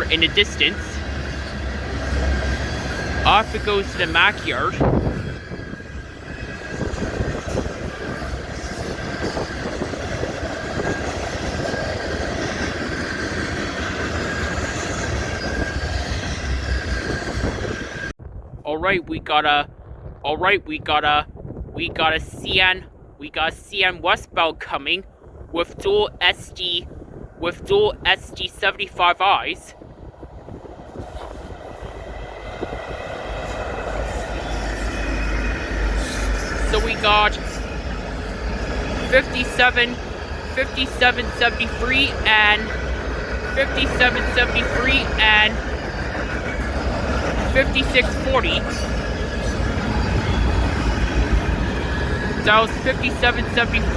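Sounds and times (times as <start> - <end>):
diesel locomotive engine rumble: 0.0 - 18.6, 21.2 - 53.9
train wheels clattering on rails: 30.1 - 53.9.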